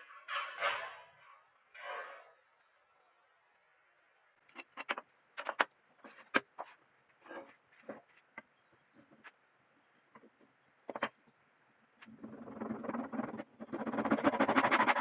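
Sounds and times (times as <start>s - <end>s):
wooden pieces knocking and clicking: 4.5s - 6.8s, 10.1s - 11.3s.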